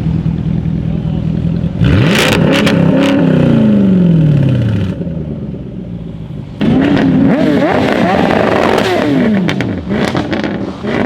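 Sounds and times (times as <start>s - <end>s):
car engine revving: 1.5s - 5.2s, 6.5s - 11.0s.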